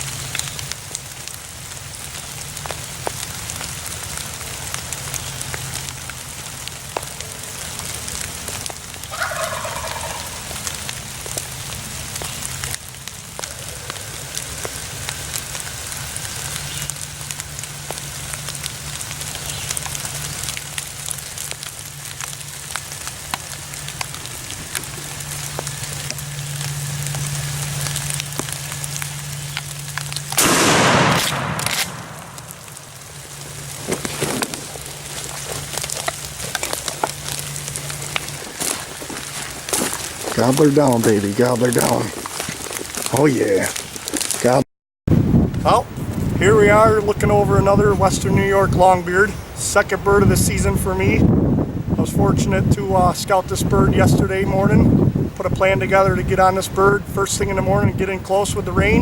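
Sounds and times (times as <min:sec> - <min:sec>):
steady rain pattering: 0:00.0 - 0:59.0
turkey gobbling: 0:09.1 - 0:10.9, 0:13.4 - 0:15.2
loud shotgun shot: 0:30.4 - 0:32.6.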